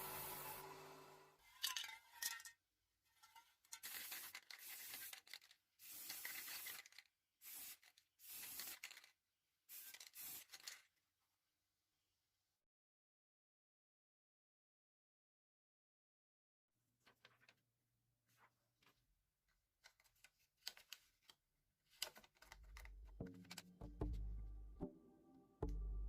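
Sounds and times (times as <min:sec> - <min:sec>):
power tool winding down: 0:00.0 - 0:01.3.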